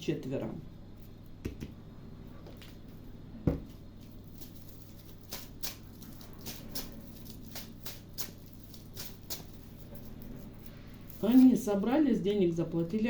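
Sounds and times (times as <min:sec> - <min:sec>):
cards clicking and flicking: 0:04.4 - 0:09.6.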